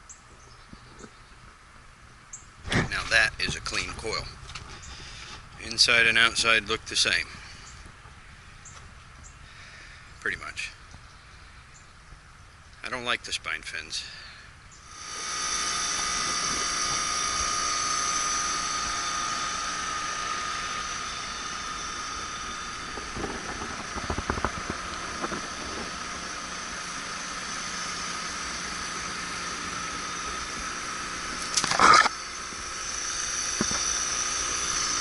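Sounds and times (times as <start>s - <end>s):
machine whining and hissing: 14.0s - 35.0s.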